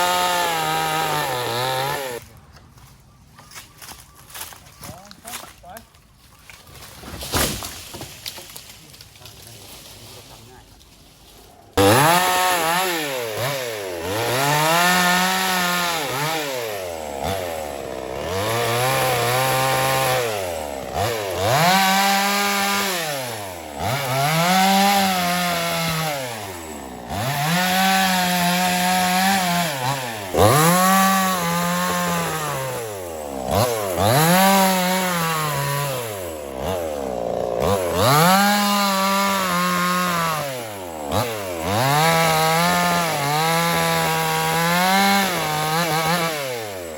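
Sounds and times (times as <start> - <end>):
chainsaw revving and idling: 0.0 - 2.3, 11.6 - 46.9.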